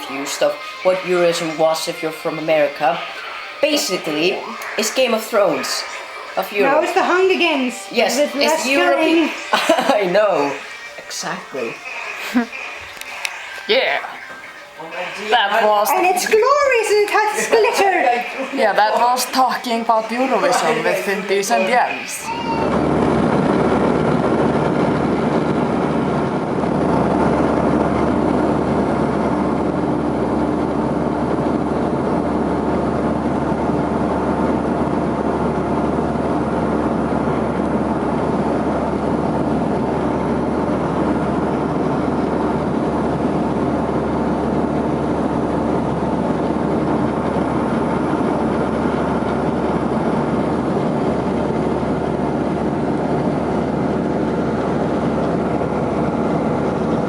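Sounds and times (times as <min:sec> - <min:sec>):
constant pitched tones: 0:00.0 - 0:26.6.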